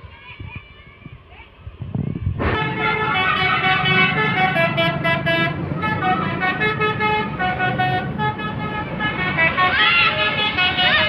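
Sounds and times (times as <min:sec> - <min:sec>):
multi-tone bus horn tune: 0:02.4 - 0:11.0.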